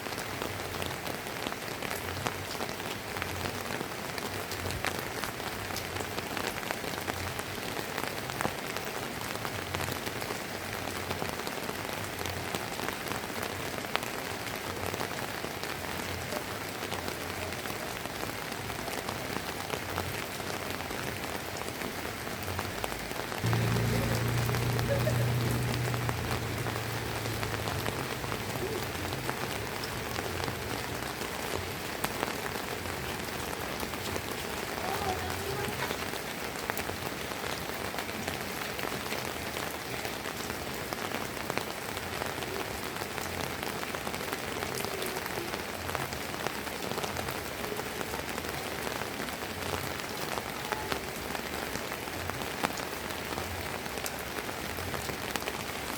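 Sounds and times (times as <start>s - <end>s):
drizzling rain: 0.0s - 55.9s
low humming rumble: 23.4s - 28.0s.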